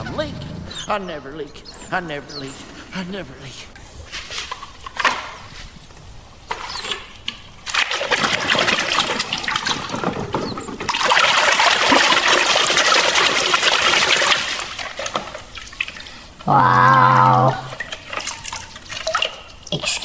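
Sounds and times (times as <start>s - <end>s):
water running and splashing: 6.5s - 20.0s.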